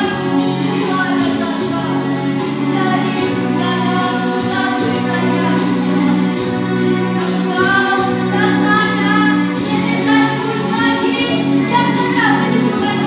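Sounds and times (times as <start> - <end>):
children's choir singing: 7.2 - 13.0.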